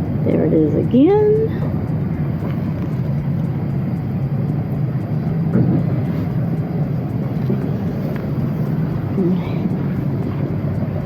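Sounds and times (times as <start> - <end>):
vehicle low rumble: 0.0 - 11.0.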